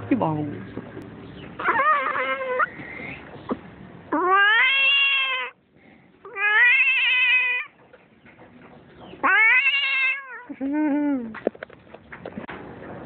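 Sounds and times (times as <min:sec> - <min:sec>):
cat yowling: 0:01.6 - 0:02.7, 0:04.1 - 0:05.6, 0:06.3 - 0:07.8, 0:09.2 - 0:10.5.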